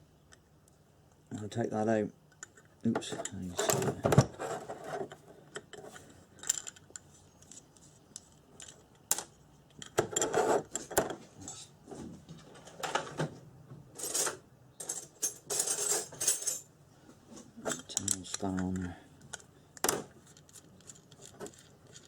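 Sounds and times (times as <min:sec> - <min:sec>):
metal parts clinking and scraping: 0:02.4 - 0:10.9, 0:14.0 - 0:16.7, 0:17.6 - 0:22.0.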